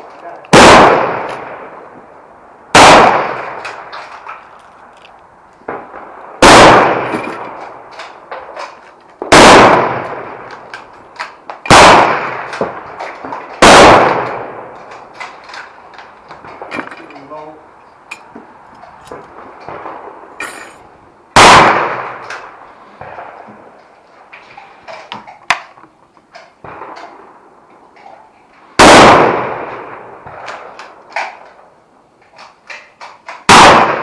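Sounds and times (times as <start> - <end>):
rifle shots with echo: 0.5 - 1.9, 2.7 - 3.9, 5.7 - 10.8, 11.7 - 15.6, 21.3 - 23.4, 28.8 - 31.4, 33.4 - 34.0
small clicks and knocks: 3.6 - 5.7, 32.2 - 33.5.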